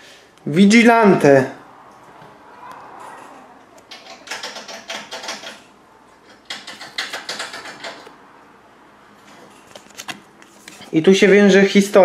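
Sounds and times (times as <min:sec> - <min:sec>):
crackling rustle of books handled: 0:09.2 - 0:11.0.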